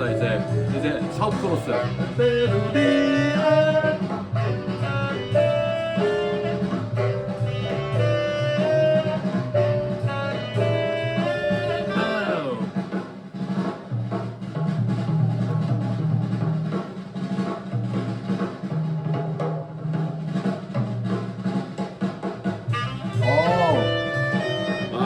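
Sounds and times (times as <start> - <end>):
jazz horns ensemble: 0.0 - 13.0, 22.5 - 25.0
jazz drums: 0.0 - 25.0.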